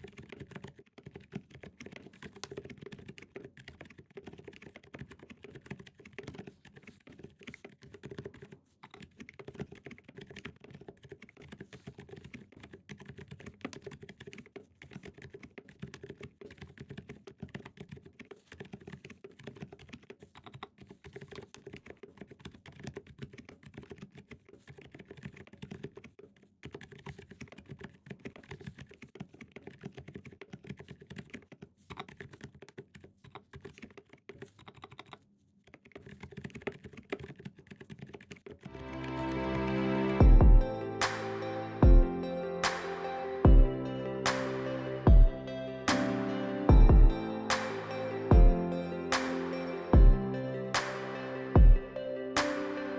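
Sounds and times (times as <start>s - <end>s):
fast mechanical keyboard typing: 0.0s - 38.8s.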